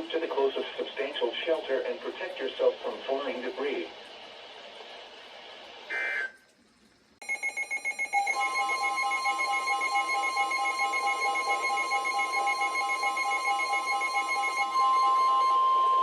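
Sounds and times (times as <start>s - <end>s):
steady alarm tone: 5.9s - 6.4s, 7.2s - 16.0s
rapid electronic beeping: 7.2s - 16.0s
warbling data tones: 7.3s - 16.0s.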